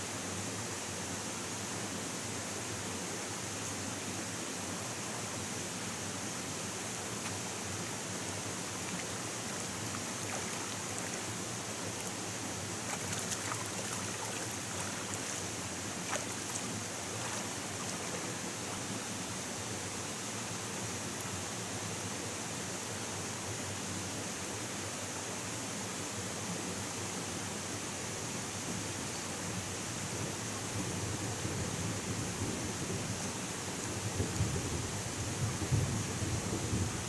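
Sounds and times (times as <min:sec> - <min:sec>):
running water: 0:04.7 - 0:20.8.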